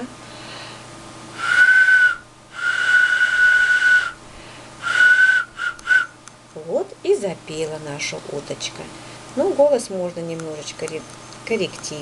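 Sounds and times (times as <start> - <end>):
clay whistle blowing: 1.4 - 4.2, 4.8 - 6.2.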